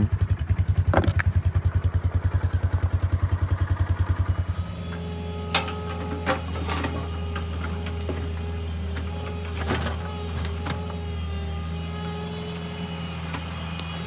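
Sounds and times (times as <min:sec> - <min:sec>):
engine idling with pulsing beat: 0:00.0 - 0:04.4.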